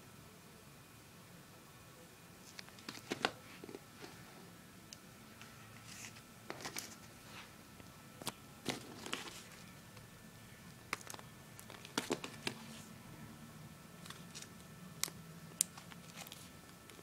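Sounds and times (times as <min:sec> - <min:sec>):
paper clicks and rustles: 0:02.5 - 0:04.2, 0:05.8 - 0:07.2, 0:08.2 - 0:09.7, 0:10.9 - 0:12.8, 0:14.0 - 0:14.6, 0:15.6 - 0:17.0.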